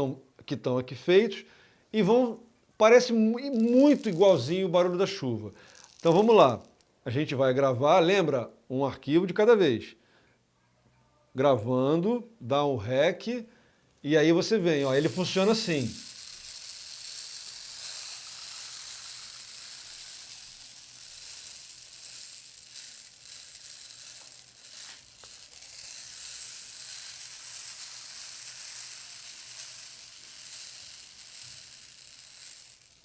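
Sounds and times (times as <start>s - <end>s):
rain stick seeds trickling: 3.4s - 4.8s, 5.5s - 6.8s, 14.6s - 33.0s.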